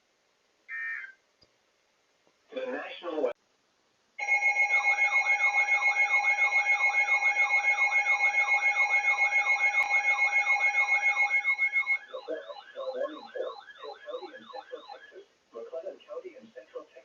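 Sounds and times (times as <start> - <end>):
fast electronic warble: 4.2 - 15.3
steady alert tones: 4.2 - 15.3.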